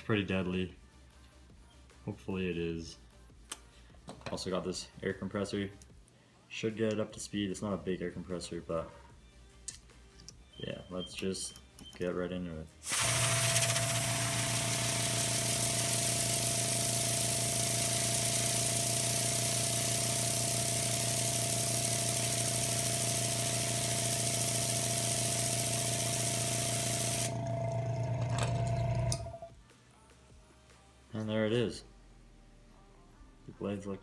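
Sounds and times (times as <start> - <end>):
compressed air hissing: 12.8 - 27.3
air compressor humming: 12.8 - 29.5.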